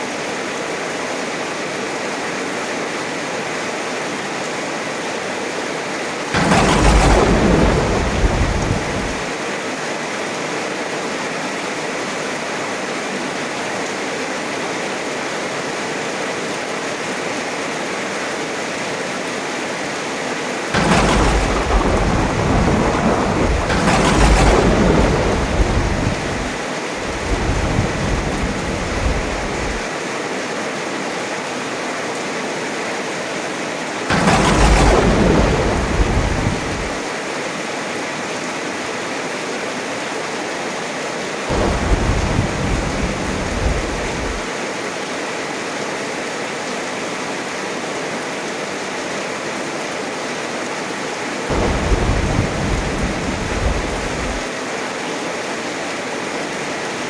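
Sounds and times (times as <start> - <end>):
heavy rain: 0.0 - 57.0
thunder rumbling: 6.4 - 9.3, 20.8 - 29.9, 34.1 - 37.1, 41.5 - 44.5, 51.5 - 54.5.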